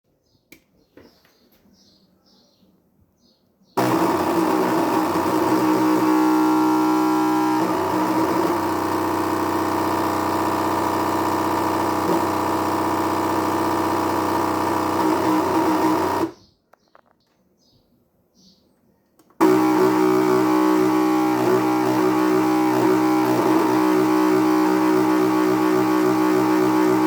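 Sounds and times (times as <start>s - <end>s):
filament feeder motor grinding whir: 3.8s - 16.4s, 19.4s - 27.0s.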